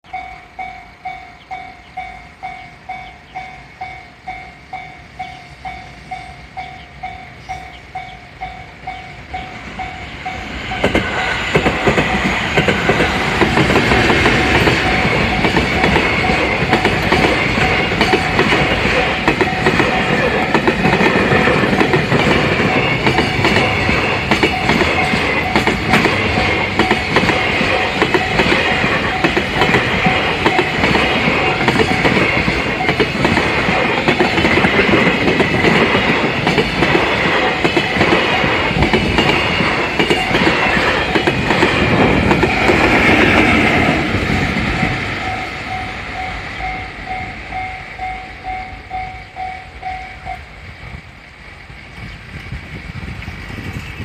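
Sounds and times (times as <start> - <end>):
train wheels clattering over rail joints: 10.6 - 45.7
level crossing alarm ringing: 12.9 - 34.6, 37.4 - 50.6.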